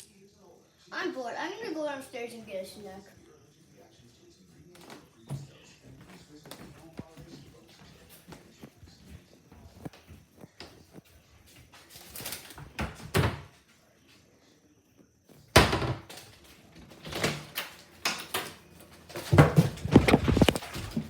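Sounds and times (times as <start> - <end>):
knocks and bumps: 19.1 - 21.0.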